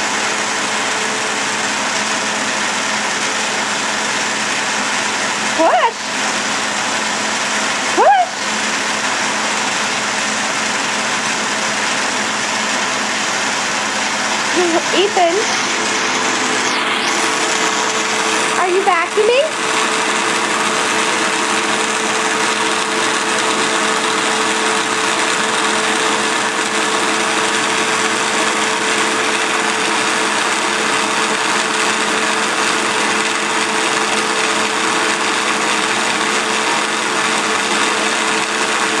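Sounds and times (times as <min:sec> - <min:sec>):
vacuum cleaner running: 0:00.0 - 0:39.0.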